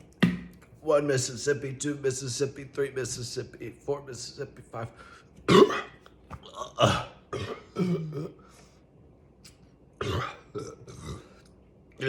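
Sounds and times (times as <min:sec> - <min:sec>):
man burping loudly: 0:05.5 - 0:08.4, 0:10.0 - 0:11.4.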